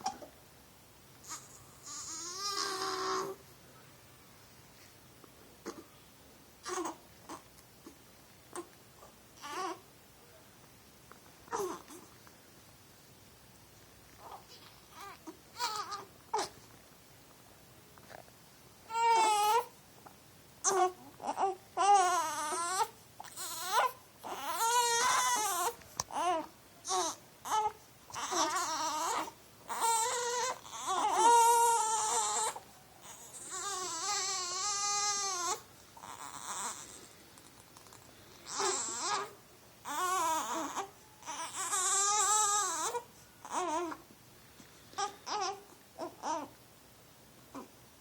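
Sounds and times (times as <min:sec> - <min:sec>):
small child crying: 0:20.6 - 0:37.0.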